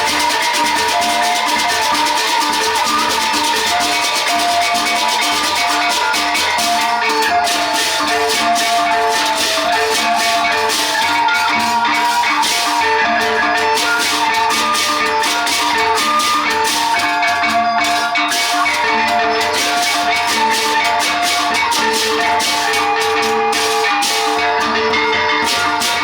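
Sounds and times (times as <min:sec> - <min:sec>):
big drums beating: 0:00.0 - 0:26.0
cymbals clashing: 0:00.0 - 0:26.0
pitched metallic notes: 0:00.0 - 0:26.0.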